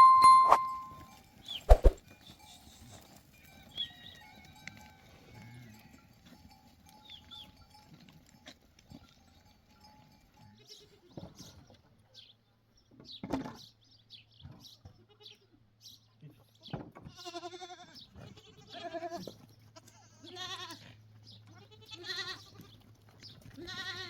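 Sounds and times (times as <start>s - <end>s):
sheep bleating: 17.1s - 19.2s, 19.8s - 21.0s, 21.6s - 22.7s, 23.6s - 24.0s.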